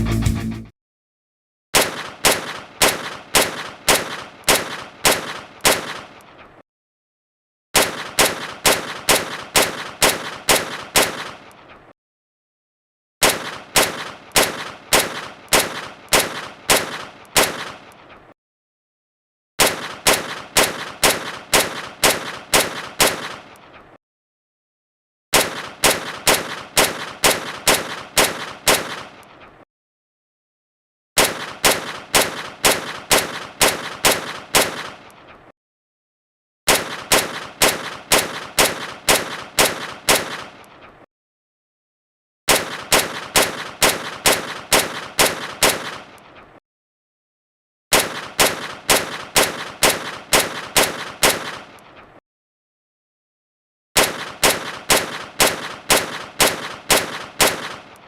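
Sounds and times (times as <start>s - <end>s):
pistol shots: 1.8s - 6.4s, 7.8s - 11.7s, 13.2s - 18.1s, 19.6s - 23.6s, 25.4s - 29.3s, 31.2s - 35.1s, 36.7s - 40.7s, 42.5s - 46.3s, 47.9s - 52.0s, 54.0s - 58.0s.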